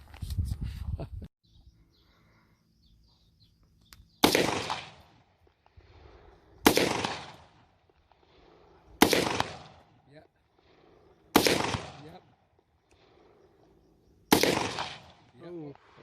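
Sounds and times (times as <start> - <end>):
gunshots with echo: 4.2 - 5.2, 6.6 - 7.7, 9.0 - 10.0, 11.3 - 12.4, 14.3 - 16.0.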